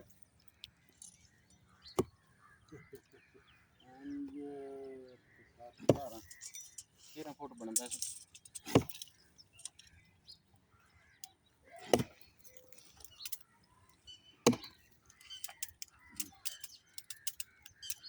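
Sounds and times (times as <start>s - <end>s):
axe chopping wood: 5.8s - 6.2s, 8.7s - 9.1s, 11.8s - 12.3s, 14.4s - 14.8s.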